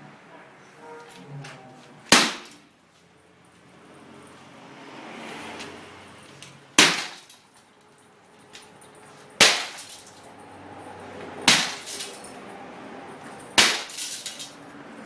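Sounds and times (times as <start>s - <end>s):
hammer striking glass: 2.1s - 2.6s, 6.8s - 7.4s, 9.4s - 10.1s, 11.4s - 12.2s, 13.6s - 14.5s
fractured glass crackling: 13.6s - 14.6s.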